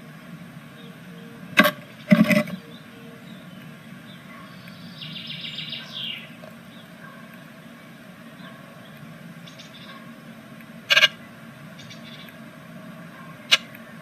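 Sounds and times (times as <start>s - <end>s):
steady low hum: 0.0s - 14.0s
bird high chirps: 2.0s - 6.9s.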